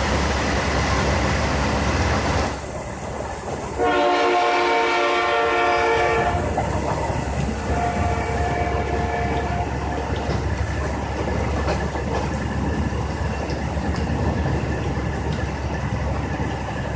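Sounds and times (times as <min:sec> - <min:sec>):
locomotive air horn chord: 0:03.8 - 0:06.6, 0:07.6 - 0:10.0.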